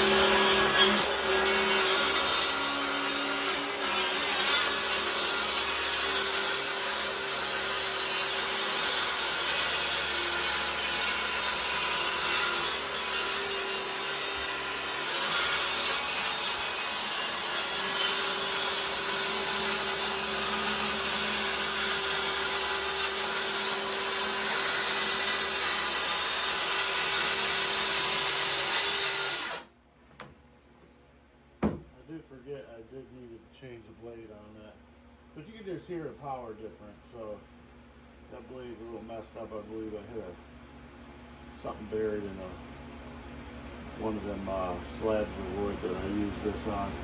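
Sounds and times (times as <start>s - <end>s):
saw cutting wood: 0.0s - 29.7s.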